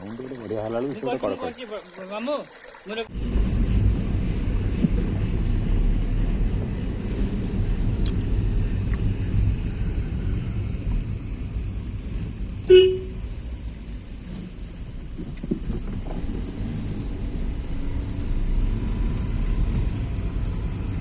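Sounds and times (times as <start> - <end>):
car engine and road rumble: 3.1 - 21.0
car horn toot: 12.7 - 13.3.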